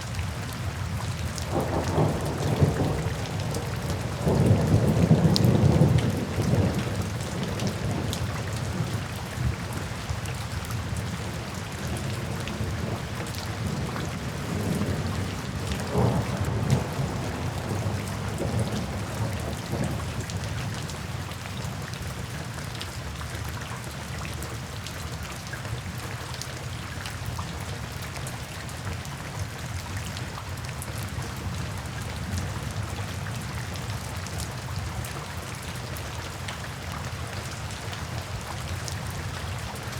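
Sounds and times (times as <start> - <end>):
steady rain falling: 0.0 - 39.9
thunder rumbling: 1.5 - 8.9, 13.6 - 20.2.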